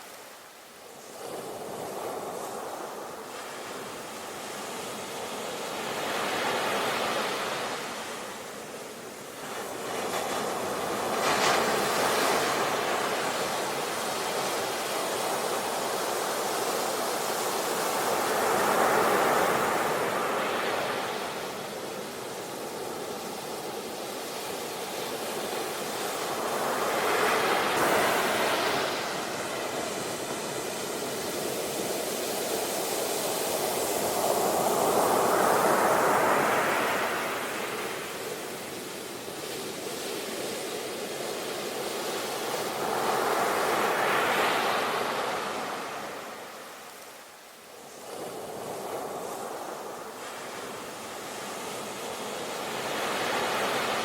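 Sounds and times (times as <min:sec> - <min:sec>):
sea waves breaking on shore: 0:00.0 - 0:54.0.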